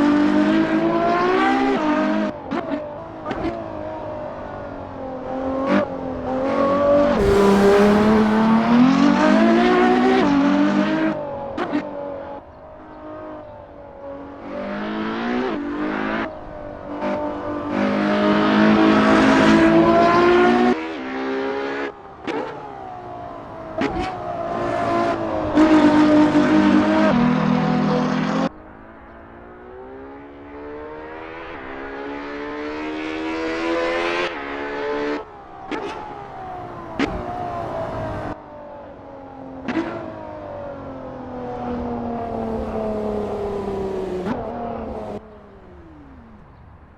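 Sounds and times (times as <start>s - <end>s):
car engine revving through gears: 5.3s - 12.2s, 17.0s - 22.6s, 41.6s - 46.5s.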